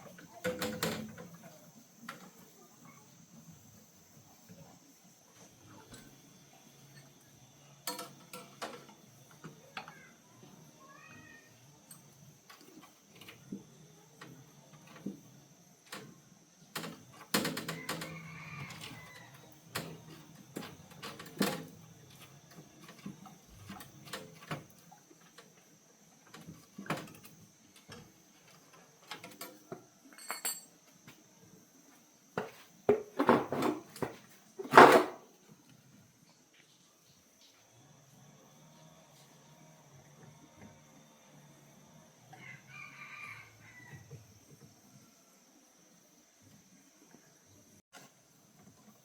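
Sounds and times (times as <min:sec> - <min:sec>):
hand tools and metal parts clinking: 0:07.8 - 0:08.9, 0:26.8 - 0:30.9.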